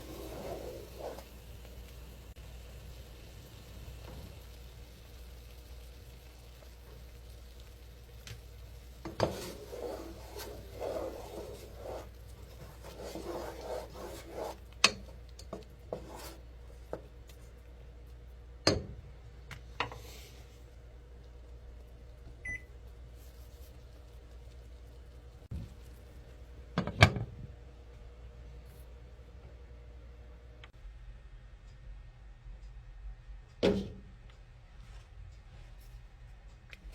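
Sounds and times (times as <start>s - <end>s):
rubbing and rustling: 9.2s - 14.7s.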